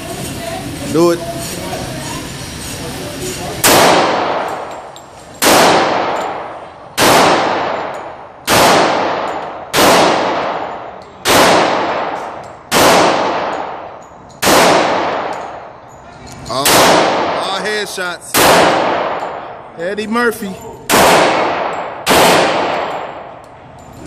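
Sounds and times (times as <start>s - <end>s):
pistol shots echoing: 3.6s - 4.7s, 5.4s - 15.7s, 16.6s - 17.6s, 18.3s - 19.6s, 20.9s - 23.4s.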